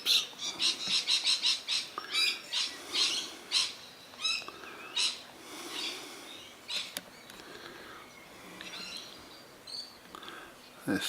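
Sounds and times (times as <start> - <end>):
parrots screeching: 0.0 - 6.0
parrots chattering: 0.0 - 7.8.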